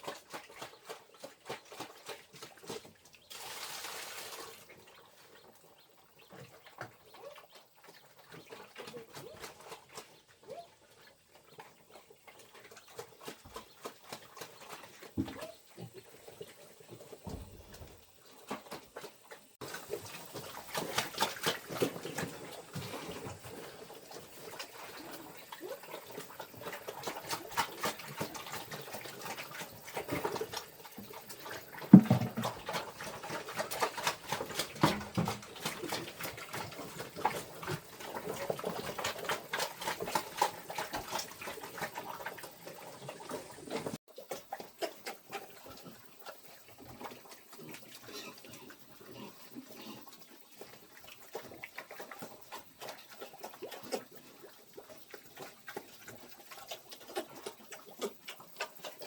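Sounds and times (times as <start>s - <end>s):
farm animals: 0.0s - 59.0s.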